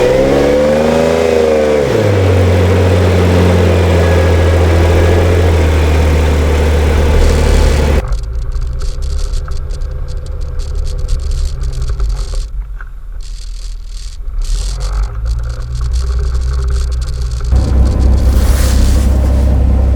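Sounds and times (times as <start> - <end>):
vehicle engine running: 0.0 - 19.9
rattles and clicks: 7.0 - 18.4.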